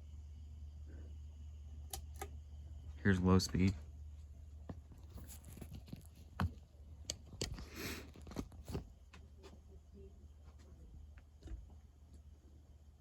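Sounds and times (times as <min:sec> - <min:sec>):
ceiling fan humming: 0:00.0 - 0:13.0.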